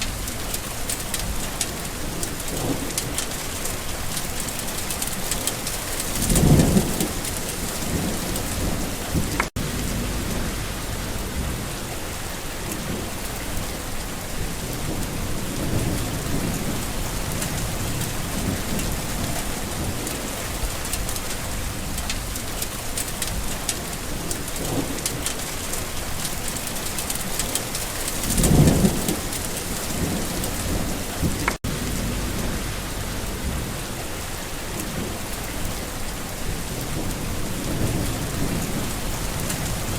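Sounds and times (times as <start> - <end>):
low thunder rumble: 0.0 - 39.9
steady rain falling: 0.0 - 39.9.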